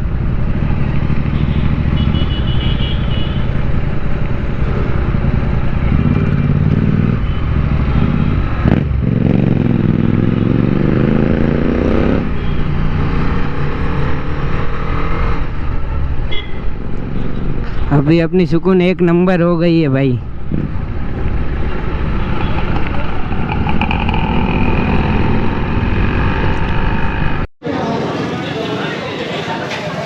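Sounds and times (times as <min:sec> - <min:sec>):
motorcycle engine accelerating: 0:03.8 - 0:15.5, 0:20.4 - 0:27.5.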